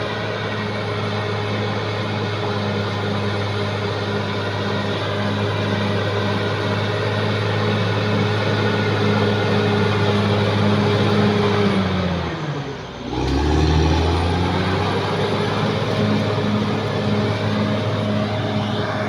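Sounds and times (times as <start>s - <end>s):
bulldozer diesel engine running: 0.0s - 19.0s.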